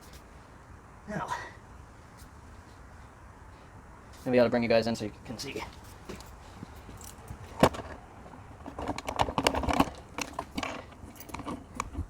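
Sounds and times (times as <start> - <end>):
camera handling clicks and clatter: 7.0 - 8.0, 8.6 - 12.0.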